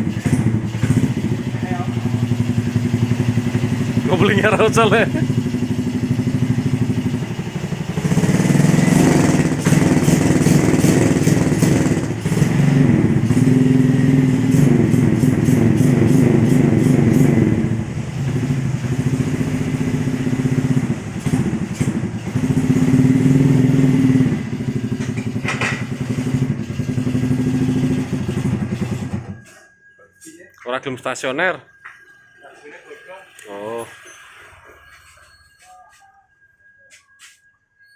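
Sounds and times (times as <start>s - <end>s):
motorcycle engine revving: 0.0s - 29.7s.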